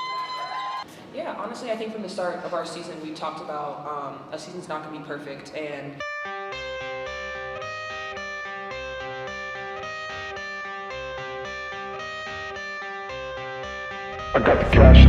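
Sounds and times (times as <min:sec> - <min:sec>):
plucked guitar over low bass: 0:14.2 - 0:15.0.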